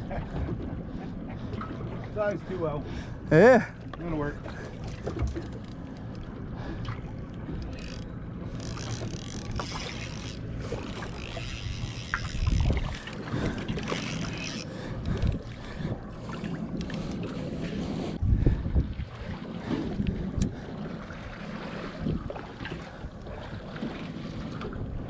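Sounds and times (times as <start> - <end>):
boat engine rumble: 0.0 - 25.0
wind buffeting microphone: 11.2 - 14.2, 14.8 - 16.1, 18.1 - 20.7
small clicks: 13.8 - 15.3.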